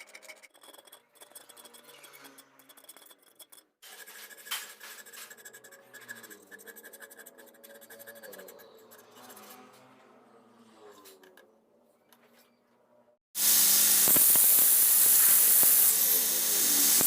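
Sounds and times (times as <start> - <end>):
steel blade scraping on abrasive: 0.0 - 11.3.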